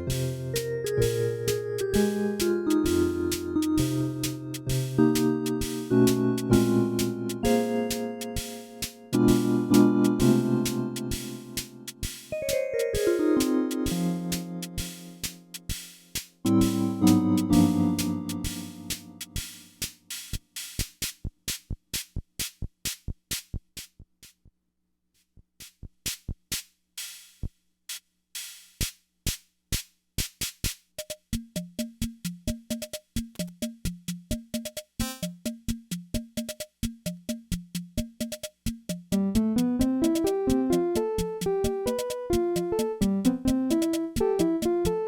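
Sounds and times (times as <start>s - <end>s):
keyboard chord: 0.0s - 14.9s, 16.5s - 19.4s, 39.4s - 45.0s
drum machine rhythm: 0.0s - 23.9s, 28.4s - 45.0s.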